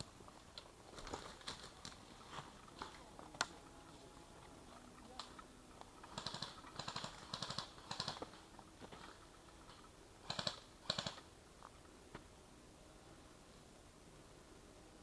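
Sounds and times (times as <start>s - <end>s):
footsteps crunching on forest floor: 0.0s - 6.7s, 8.2s - 9.4s.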